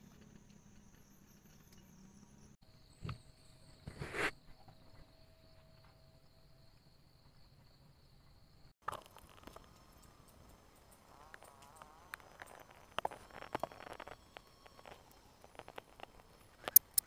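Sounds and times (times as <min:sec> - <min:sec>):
wavering insect buzz: 0:08.8 - 0:17.0.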